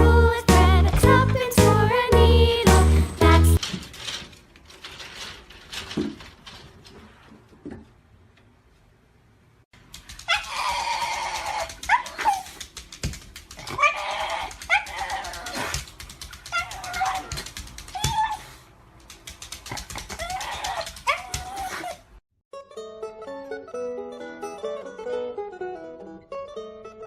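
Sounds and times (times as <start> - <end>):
dog whining and yelping: 10.2 - 12.6, 13.6 - 15.8, 16.4 - 18.6, 19.9 - 22.1.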